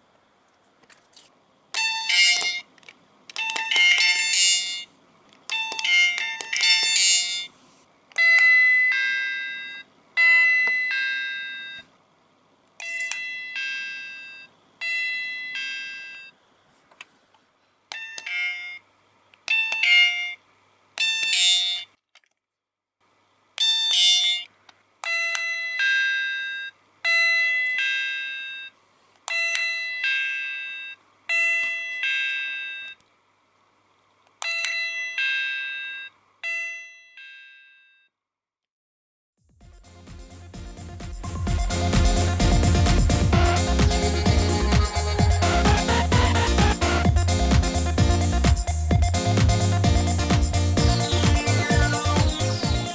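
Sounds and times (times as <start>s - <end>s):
toy doorbell ding-dong chime: 1.8s - 2.6s, 3.4s - 4.9s, 5.5s - 7.5s, 8.2s - 11.8s, 12.8s - 16.3s, 18.0s - 18.8s, 19.6s - 20.4s, 25.1s - 28.7s, 29.4s - 33.0s, 34.5s - 38.1s.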